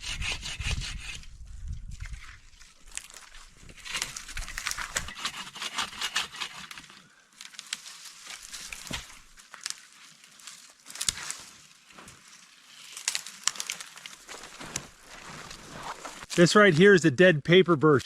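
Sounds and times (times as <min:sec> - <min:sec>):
bark crinkling and tearing: 0:02.0 - 0:16.4.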